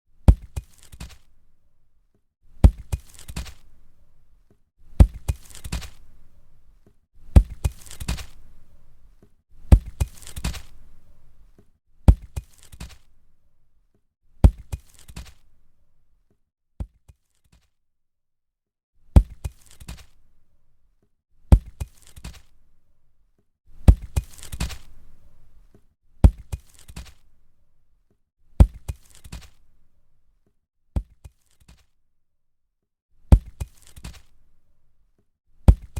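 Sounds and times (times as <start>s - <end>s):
concrete block thudding on ground: 0.3s - 1.2s, 2.6s - 3.7s, 9.7s - 10.8s, 12.1s - 13.0s, 35.7s - 35.9s.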